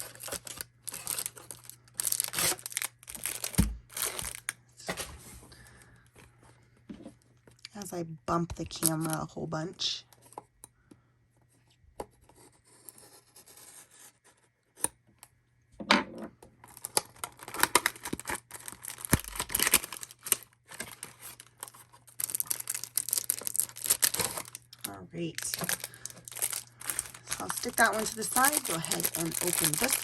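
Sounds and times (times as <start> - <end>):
cardboard and wrappers tearing: 0.0 - 5.0, 16.7 - 30.0.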